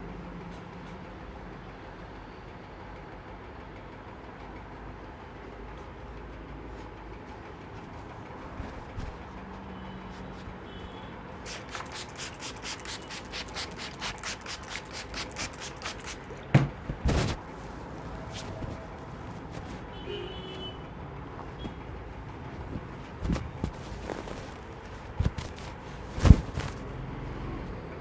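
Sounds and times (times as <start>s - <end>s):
hands rubbing face: 11.5s - 16.2s, 16.9s - 19.9s, 22.6s - 26.9s
heavy thump: 16.6s - 19.8s, 22.6s - 26.9s.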